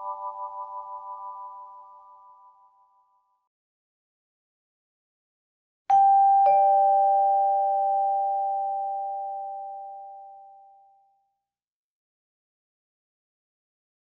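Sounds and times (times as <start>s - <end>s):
vibraphone notes ringing: 5.9s - 10.3s.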